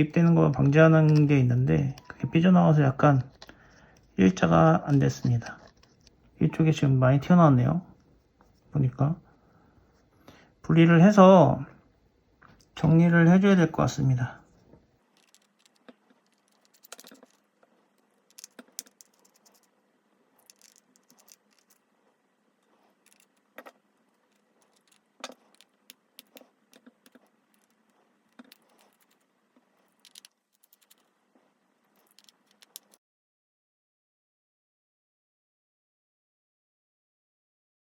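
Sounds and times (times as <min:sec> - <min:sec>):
small tools clicking on metal parts: 0:15.1 - 0:17.5, 0:18.3 - 0:19.7, 0:20.4 - 0:21.8, 0:23.0 - 0:29.2, 0:29.8 - 0:31.1, 0:32.0 - 0:33.0.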